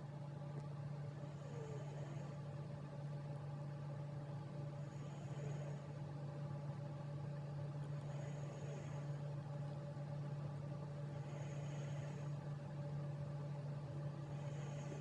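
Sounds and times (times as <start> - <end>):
steady low hum: 0.0 - 15.0
cat snoring softly: 1.2 - 2.7, 4.6 - 6.1, 7.9 - 9.4, 11.0 - 12.5, 14.2 - 15.0.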